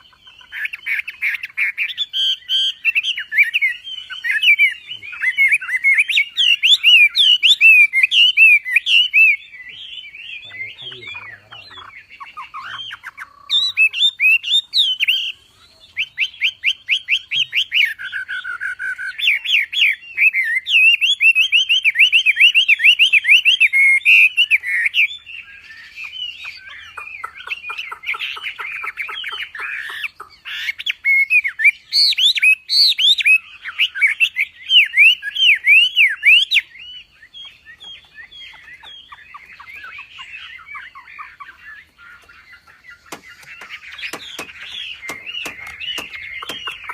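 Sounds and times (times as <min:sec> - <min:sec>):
songbird chirping and whistling: 0:00.0 - 0:46.9.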